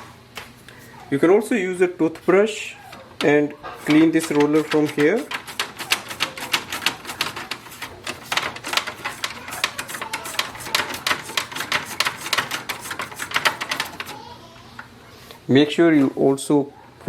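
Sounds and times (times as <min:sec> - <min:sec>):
toothbrush scrubbing rubber roller: 0:02.9 - 0:14.2.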